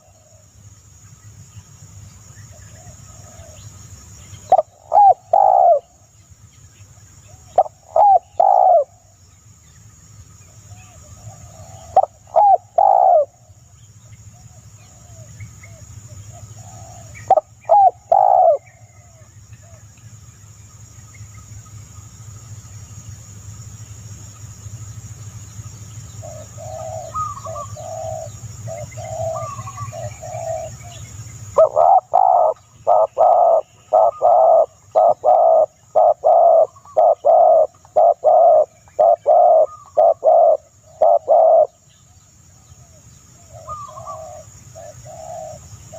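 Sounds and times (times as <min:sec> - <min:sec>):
steady high hiss: 0:00.0 - 0:45.9
dove cooing: 0:02.7 - 0:03.6, 0:04.4 - 0:06.0, 0:07.3 - 0:09.0, 0:10.7 - 0:13.4, 0:14.4 - 0:19.8, 0:26.2 - 0:31.0, 0:31.6 - 0:41.8, 0:42.8 - 0:45.9.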